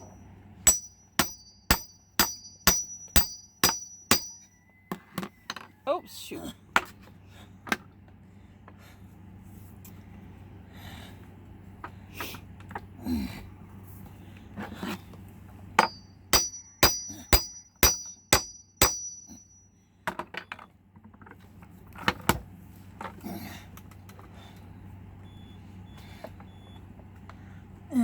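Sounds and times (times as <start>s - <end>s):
metal clinks and scrapes: 0.0s - 4.5s, 15.8s - 19.7s
ringing metallic strikes on safe: 0.7s - 4.5s, 15.8s - 19.7s.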